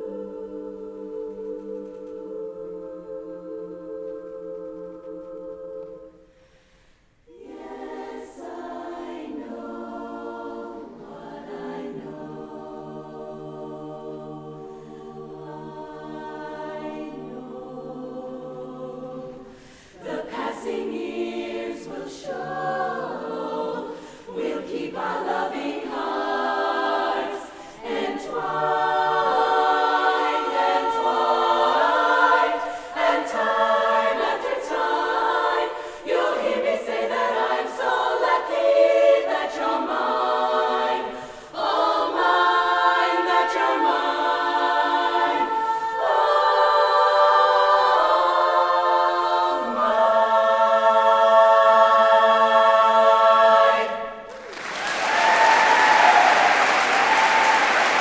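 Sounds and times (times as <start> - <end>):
women's chorus singing a cappella: 0.0 - 58.0
audience applause: 54.3 - 58.0.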